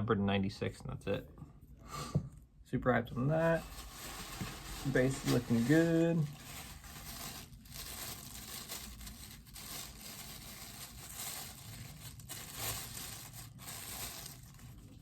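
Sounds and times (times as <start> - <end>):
packaging rustling and tearing: 3.5 - 15.0.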